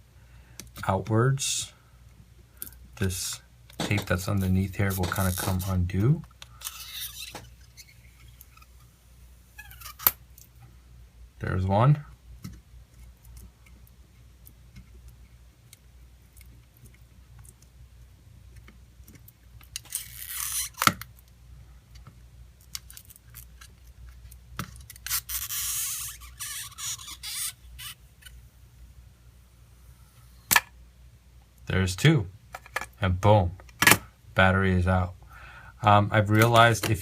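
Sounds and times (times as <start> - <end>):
adhesive tape crackly scraping: 4.1 - 8.9, 9.5 - 10.5, 18.6 - 21.1, 22.6 - 28.4.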